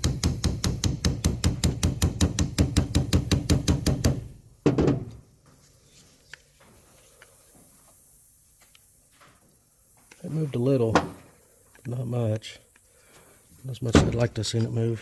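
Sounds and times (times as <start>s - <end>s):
hammer tapping metal punch: 0.0s - 5.0s.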